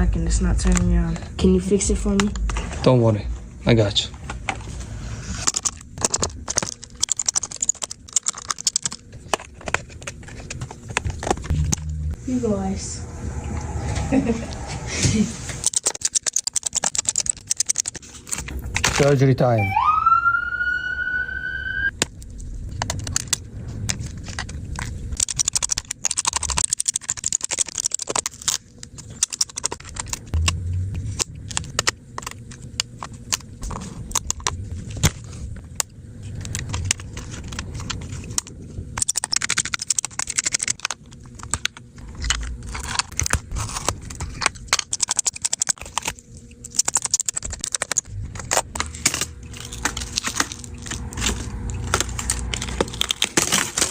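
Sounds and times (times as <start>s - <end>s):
laptop parts clicking and rattling: 5.3s - 11.8s, 15.6s - 19.2s, 21.9s - 53.9s
rising whistle-like tone: 12.8s - 15.2s, 19.6s - 21.9s.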